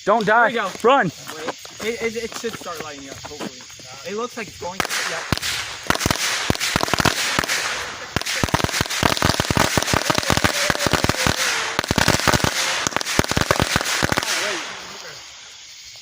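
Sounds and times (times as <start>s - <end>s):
firecrackers popping: 0.0s - 16.0s
hiss: 4.1s - 16.0s.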